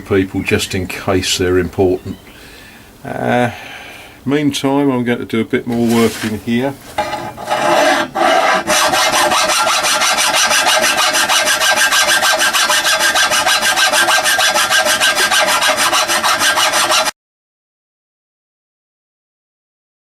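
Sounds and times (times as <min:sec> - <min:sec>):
hand file rasping on metal: 0:07.0 - 0:17.1.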